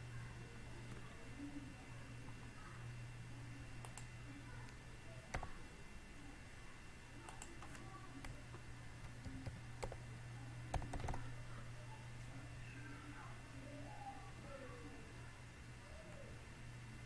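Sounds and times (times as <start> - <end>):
steady low hum: 0.0 - 17.0
computer mouse and keyboard clicks: 3.8 - 4.1, 7.2 - 8.4, 9.0 - 10.0, 10.7 - 11.3.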